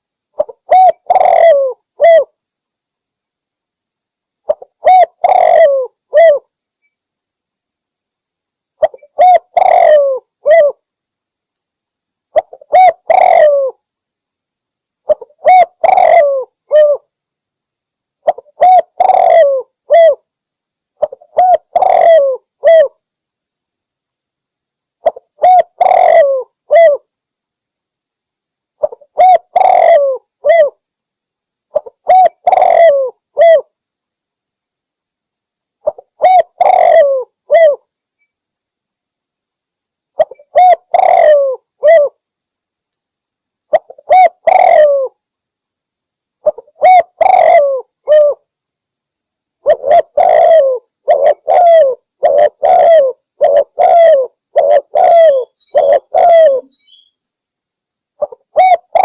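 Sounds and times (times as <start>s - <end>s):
dove cooing: 0.4s - 2.3s, 4.5s - 6.5s, 8.8s - 10.8s, 12.4s - 13.8s, 15.1s - 17.1s, 18.2s - 20.2s, 21.0s - 23.0s, 25.0s - 27.1s, 28.8s - 30.8s, 31.7s - 33.7s, 35.8s - 37.8s, 40.2s - 42.2s, 43.7s - 45.2s, 46.4s - 48.4s, 49.6s - 57.1s, 58.2s - 59.0s.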